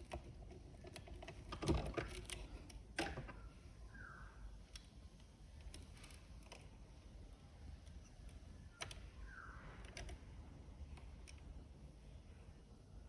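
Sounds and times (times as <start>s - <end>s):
lock pick clicking and scraping: 0.0s - 3.2s.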